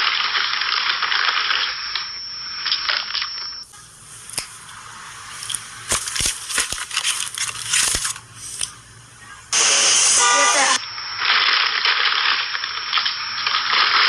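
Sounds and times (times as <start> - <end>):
crunching crackling noise: 0.0 - 9.3, 10.8 - 14.0.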